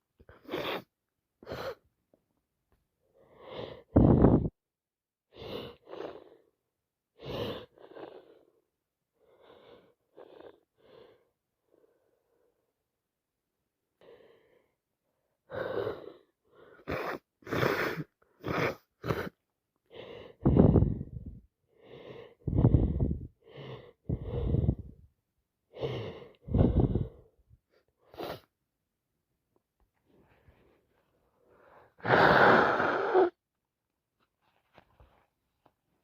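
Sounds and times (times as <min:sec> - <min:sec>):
woman gasping breaths: 0:19.9 - 0:25.0.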